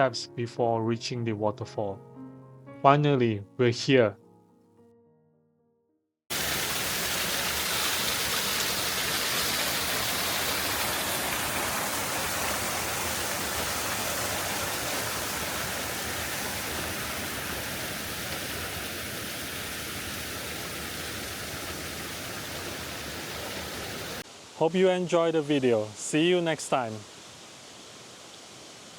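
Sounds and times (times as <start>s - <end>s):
waterfall splashing into pool: 6.3s - 28.9s.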